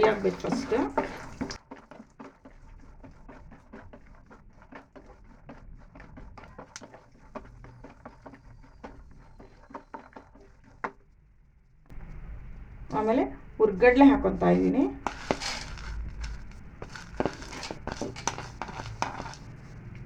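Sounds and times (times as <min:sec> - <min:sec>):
nuts frying in oil: 0:00.0 - 0:01.9, 0:11.9 - 0:20.0.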